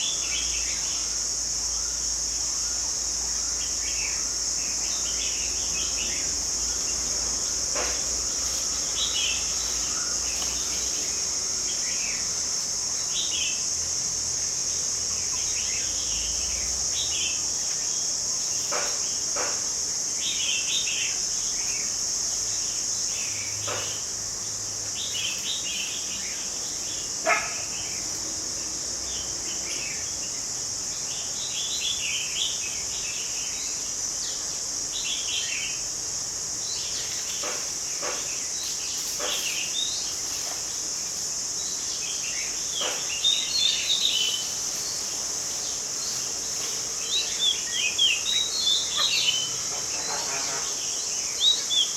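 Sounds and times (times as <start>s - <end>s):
high-pitched insect drone: 0.0s - 51.9s
sweeping bird calls: 41.4s - 51.9s
bird chirps: 47.0s - 51.9s.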